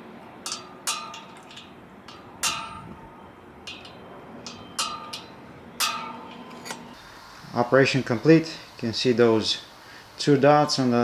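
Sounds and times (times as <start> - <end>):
hammer striking metal punch: 0.5 - 6.8.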